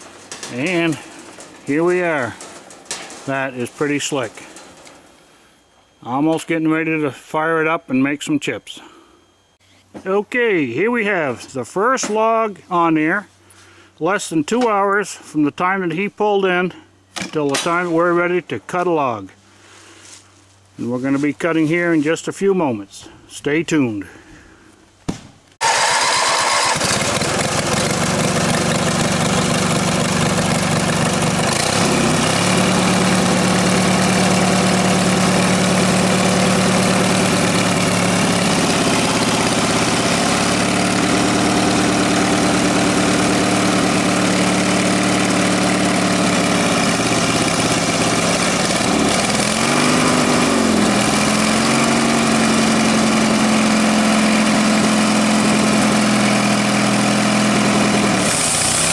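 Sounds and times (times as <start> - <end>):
sawmill engine running: 0.0 - 7.1, 25.6 - 58.9.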